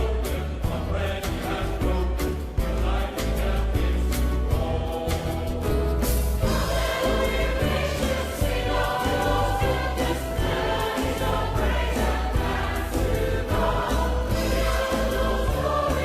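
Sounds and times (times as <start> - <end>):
group singing a hymn: 0.0 - 16.0
instrumental accompaniment with low bass: 0.0 - 16.0.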